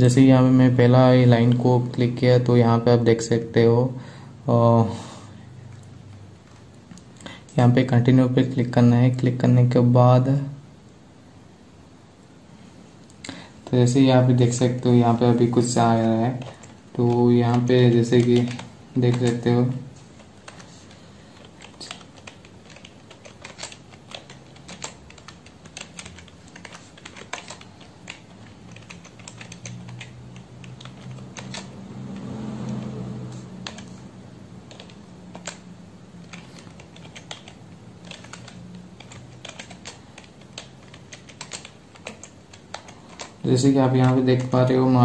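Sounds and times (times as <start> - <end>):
keyboard typing clicks: 14.5 - 44.8.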